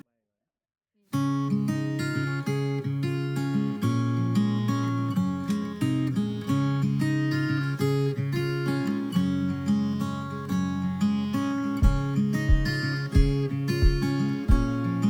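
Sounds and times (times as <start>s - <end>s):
strummed acoustic guitar: 1.2s - 15.0s
low beats: 11.8s - 14.8s.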